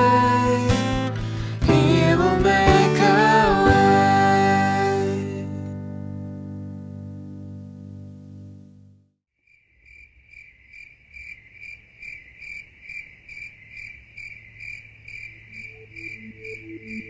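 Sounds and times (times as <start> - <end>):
cricket chirping: 9.5 - 17.0.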